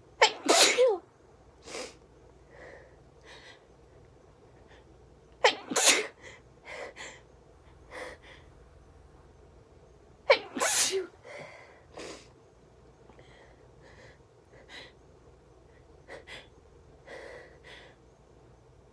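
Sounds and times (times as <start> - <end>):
person sneezing: 0.2 - 1.0, 5.4 - 6.2, 10.3 - 11.1.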